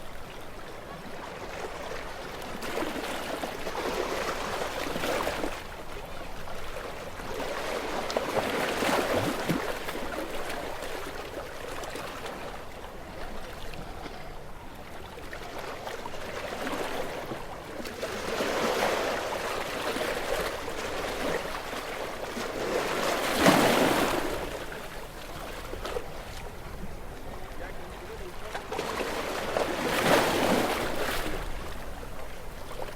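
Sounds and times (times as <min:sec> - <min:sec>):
waves crashing on rocks: 0:18.0 - 0:32.9.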